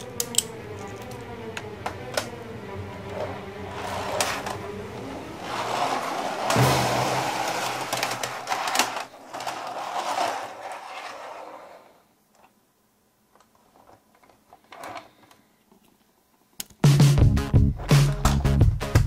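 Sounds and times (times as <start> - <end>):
small machine whirring and clattering: 3.1 - 6.7, 7.3 - 12.6.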